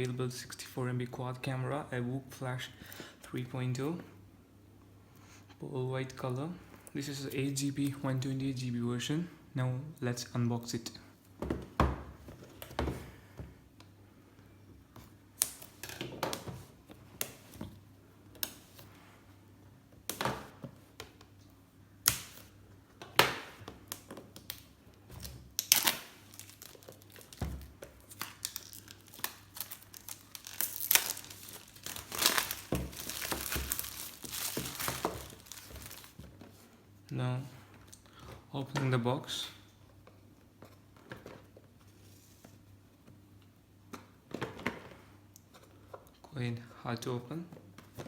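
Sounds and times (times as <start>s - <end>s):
packaging tearing and crinkling: 23.9s - 36.2s.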